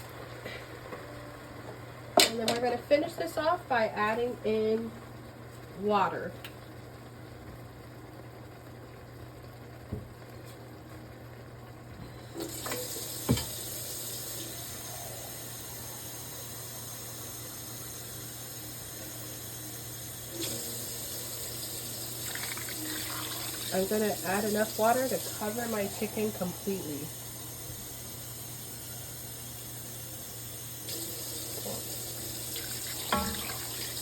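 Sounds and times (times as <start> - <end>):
water running from tap: 12.2 - 34.0.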